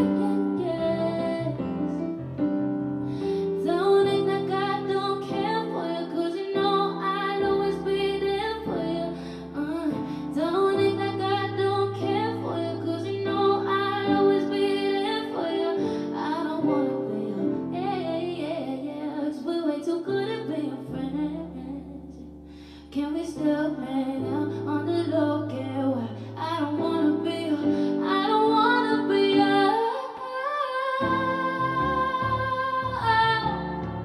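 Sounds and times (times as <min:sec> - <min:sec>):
keyboard chords and bass: 0:00.0 - 0:05.7, 0:31.0 - 0:34.0.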